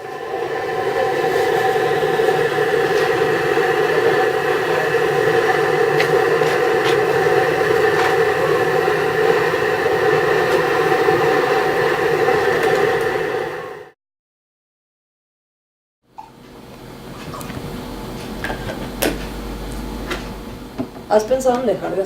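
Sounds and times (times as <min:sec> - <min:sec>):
machine humming and whirring: 0:00.0 - 0:13.9.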